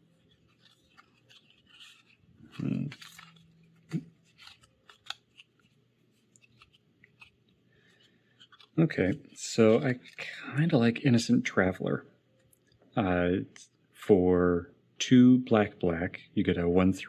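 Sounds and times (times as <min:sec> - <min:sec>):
trading cards rustling: 0:00.0 - 0:10.4
card clicks: 0:00.4 - 0:05.8, 0:06.4 - 0:07.4, 0:08.0 - 0:09.2.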